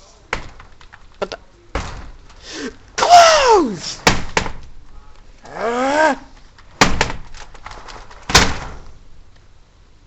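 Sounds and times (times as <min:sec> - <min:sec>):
door knocks and thuds: 0:00.3 - 0:01.1, 0:01.7 - 0:02.4, 0:04.0 - 0:04.9, 0:06.7 - 0:09.0
person's strained cry: 0:02.5 - 0:04.0, 0:05.4 - 0:06.4.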